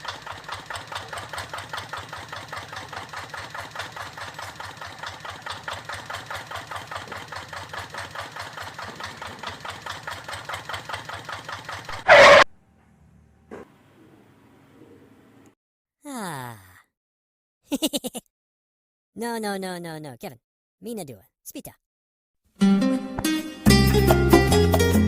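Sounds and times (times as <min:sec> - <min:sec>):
small engine chugging: 0:00.0 - 0:12.4
loud short burst: 0:11.9 - 0:12.5.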